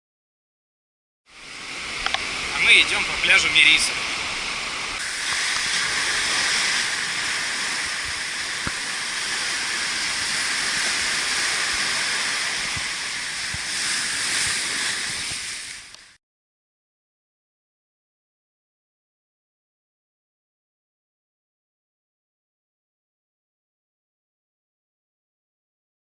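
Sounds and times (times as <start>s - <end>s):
waves breaking on beach: 1.3s - 16.2s.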